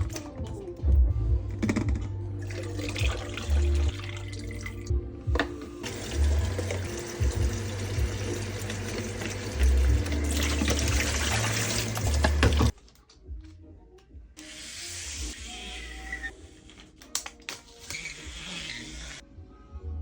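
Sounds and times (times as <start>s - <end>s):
background music: 0.0s - 20.0s
tap water running into sink: 2.5s - 12.7s.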